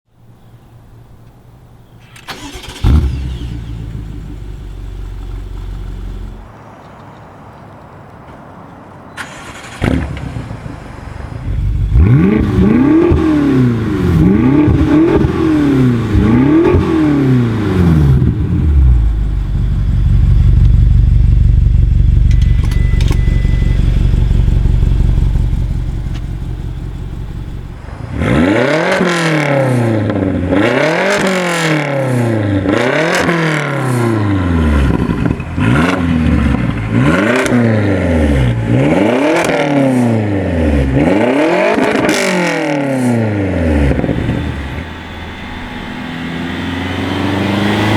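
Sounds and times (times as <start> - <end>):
engine low drone: 1.8 - 6.5, 9.3 - 47.9
car engine revving: 2.3 - 6.4, 9.3 - 47.9.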